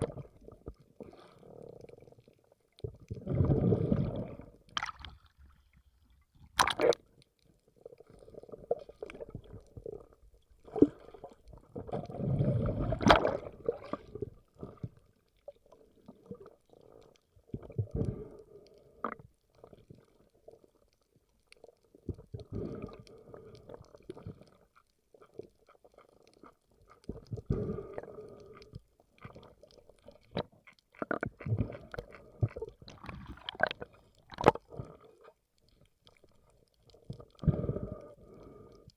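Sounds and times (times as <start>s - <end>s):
muffled underwater gurgling: 8.0s - 15.0s, 37.2s - 38.7s.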